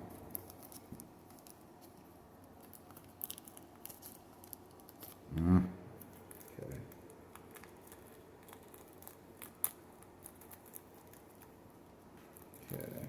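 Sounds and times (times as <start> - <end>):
wrapper crinkling: 0.0 - 5.2.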